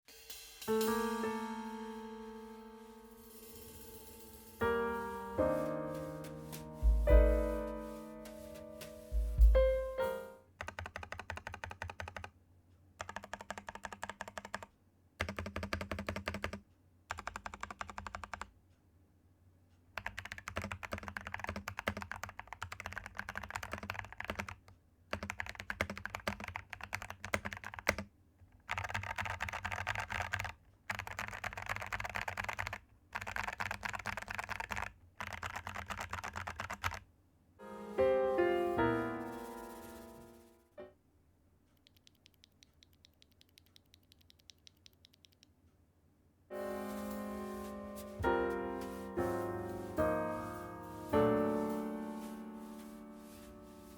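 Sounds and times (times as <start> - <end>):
piano music: 0.7 - 10.5, 37.6 - 41.0, 46.5 - 53.9
typing on mechanical keyboard: 10.6 - 12.4, 13.0 - 18.5, 20.0 - 37.1, 41.8 - 45.5.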